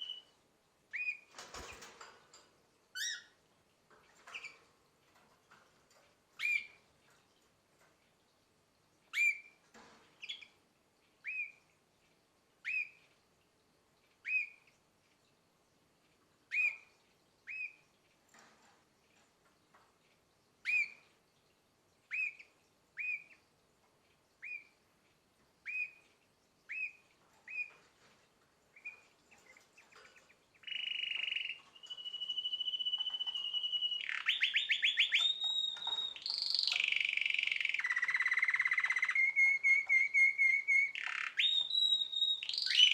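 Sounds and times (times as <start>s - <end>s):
canary chirping: 0.0s - 2.1s, 2.9s - 3.4s, 4.0s - 7.2s, 9.1s - 10.6s, 11.2s - 11.7s, 12.6s - 13.1s, 14.2s - 14.7s, 16.5s - 18.4s, 20.6s - 21.2s, 22.1s - 23.4s, 24.4s - 24.8s, 25.6s - 42.9s
canary song with trills: 0.0s - 42.9s.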